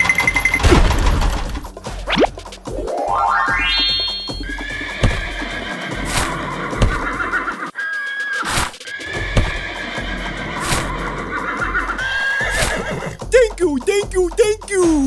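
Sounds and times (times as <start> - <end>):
rising sweep: 2.1 - 4.8
warbling melody: 2.1 - 5.4.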